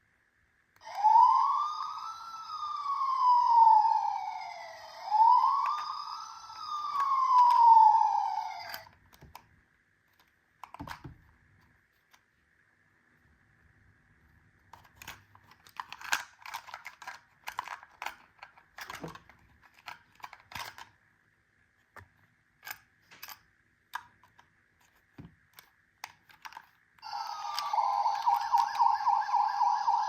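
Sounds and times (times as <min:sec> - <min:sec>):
toy electronic siren wailing: 0:00.8 - 0:09.0, 0:27.0 - 0:30.0.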